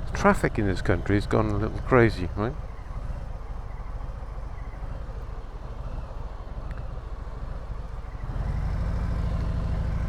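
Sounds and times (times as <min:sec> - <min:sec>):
motorcycle engine idling: 0:05.9 - 0:10.0.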